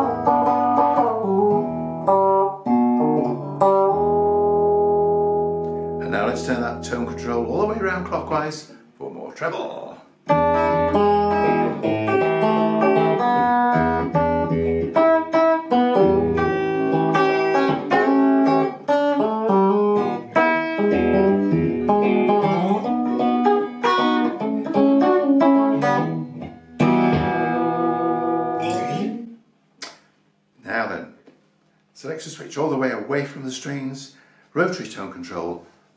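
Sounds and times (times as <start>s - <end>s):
electric guitar playing: 0.0s - 8.5s, 10.2s - 29.4s.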